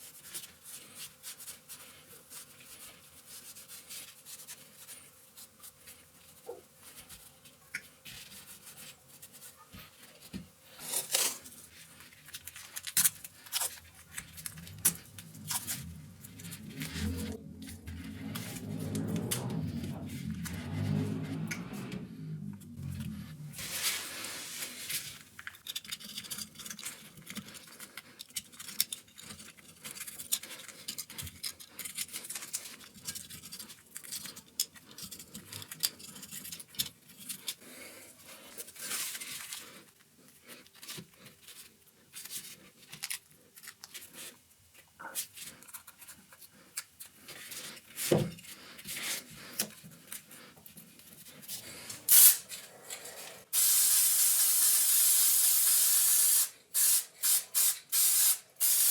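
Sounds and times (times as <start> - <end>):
spray can hissing: 52.1 - 52.4, 53.5 - 58.9.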